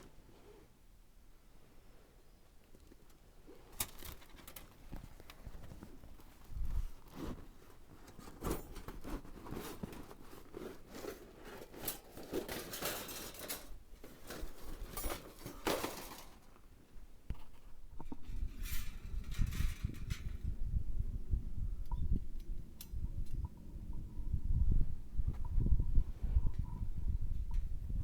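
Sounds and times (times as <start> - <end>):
rustling and scraping handling noises: 1.7 - 20.6.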